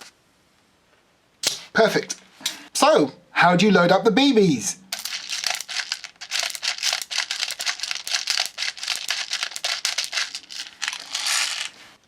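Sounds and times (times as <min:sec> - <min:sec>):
plastic pellets rattling: 0:04.9 - 0:11.9.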